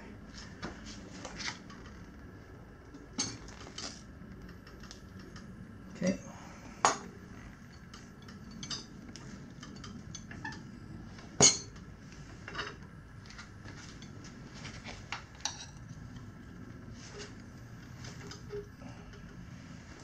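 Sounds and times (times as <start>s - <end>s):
tire irons clinking on wheel rim: 7.7s - 11.9s.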